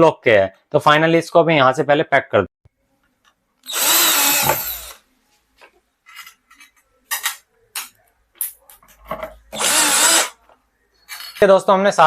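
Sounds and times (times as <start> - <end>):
power screwdriver whirring: 3.7 - 5.0, 9.6 - 10.4.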